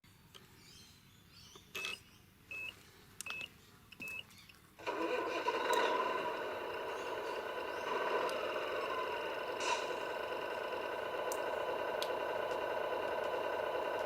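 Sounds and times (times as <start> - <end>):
short electronic beeps: 1.8 - 4.3
small electric motor whining: 4.8 - 14.0.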